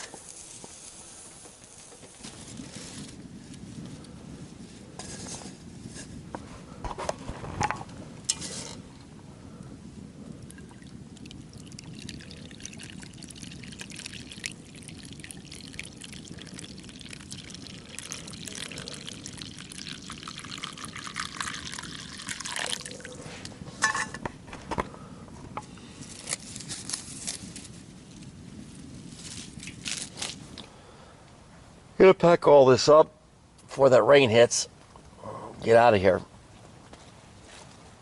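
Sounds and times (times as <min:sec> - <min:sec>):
liquid pouring and trickling: 0:10.4 - 0:23.3.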